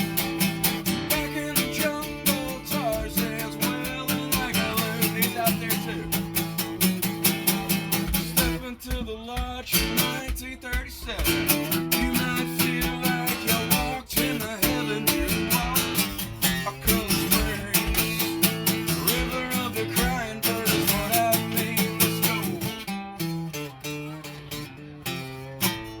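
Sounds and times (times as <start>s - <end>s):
acoustic guitar strumming: 0.0s - 26.0s.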